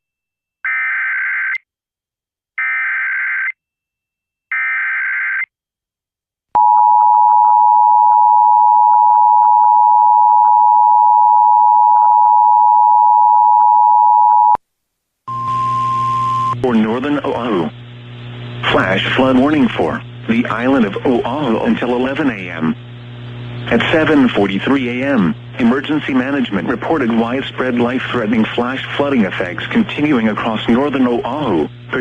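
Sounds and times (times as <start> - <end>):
buzzy digital header tones: 15.3 - 32.0.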